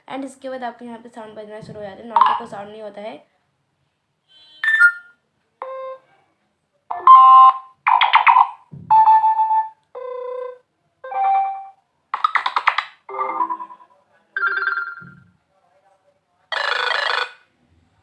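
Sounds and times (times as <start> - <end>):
phone notification chimes: 6.9 - 7.6, 8.9 - 11.8, 13.1 - 15.2.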